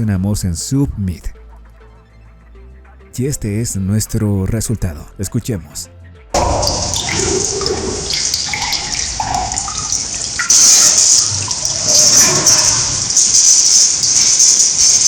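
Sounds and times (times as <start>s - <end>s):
steady hiss: 6.4s - 15.0s
water drips in a cavern: 6.4s - 15.0s.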